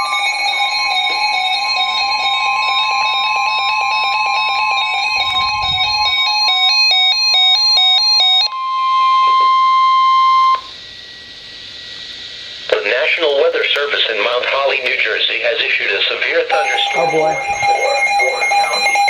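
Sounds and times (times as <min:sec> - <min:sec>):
rapid electronic beeps: 0:16.5 - 0:19.0
steady high alert tone: 0:16.5 - 0:19.0.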